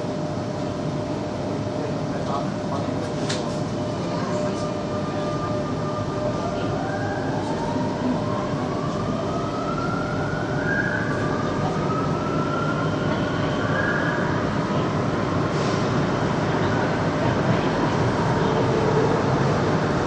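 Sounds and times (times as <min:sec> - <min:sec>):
train wheels rumbling on track: 0:10.2 - 0:20.0.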